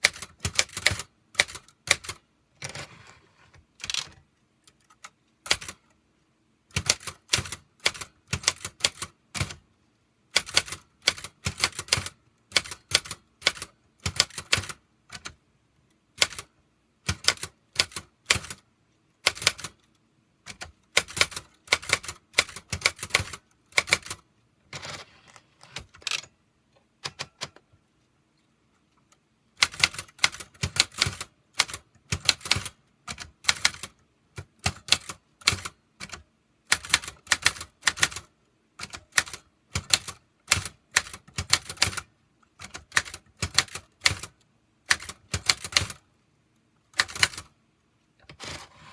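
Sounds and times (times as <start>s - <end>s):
typewriter keys clicking: 0.0s - 2.8s, 3.8s - 5.8s, 6.7s - 9.6s, 10.4s - 15.4s, 16.2s - 16.5s, 17.1s - 18.6s, 20.5s - 24.2s, 29.6s - 34.0s, 34.6s - 46.0s, 47.0s - 47.5s.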